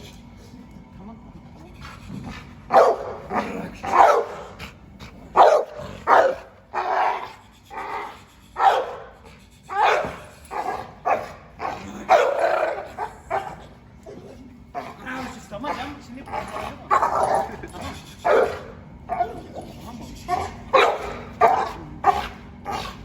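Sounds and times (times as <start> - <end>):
dog barking: 2.7 - 4.6, 5.4 - 7.3, 8.6 - 13.7, 16.4 - 19.5, 20.3 - 22.9.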